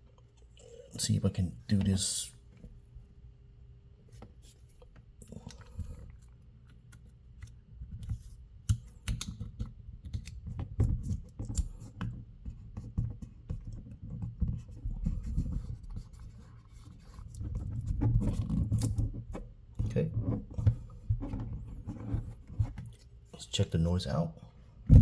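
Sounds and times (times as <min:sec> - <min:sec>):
small clicks and handling noise: 0:04.1 - 0:16.2.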